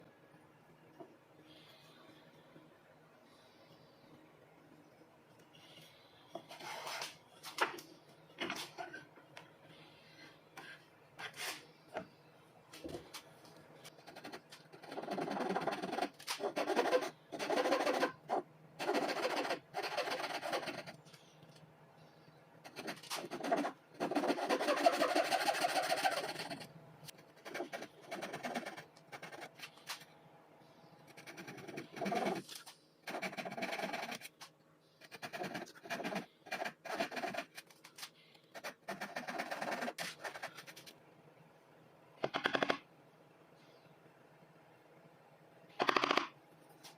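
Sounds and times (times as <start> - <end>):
hand tool scraping wood: 22.8 - 26.5.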